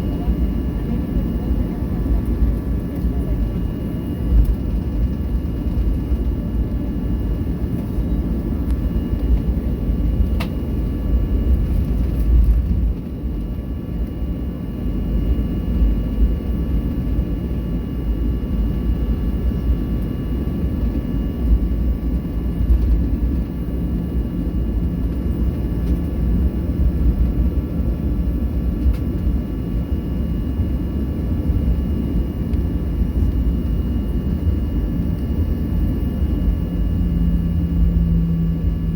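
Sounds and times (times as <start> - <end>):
jet engines heard in cabin: 0.0 - 38.9.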